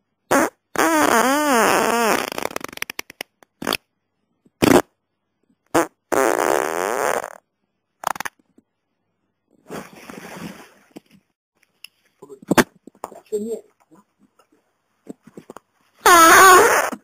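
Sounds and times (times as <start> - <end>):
farts: 0.3 - 3.8, 4.6 - 4.9, 5.7 - 7.4, 8.0 - 8.4, 16.0 - 17.0.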